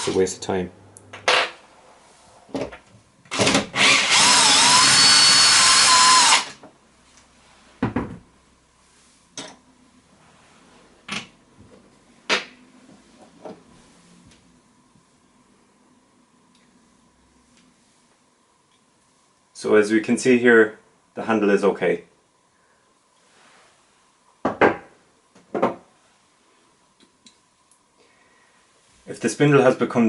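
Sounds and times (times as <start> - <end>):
cordless drill whining: 3.3 - 6.6.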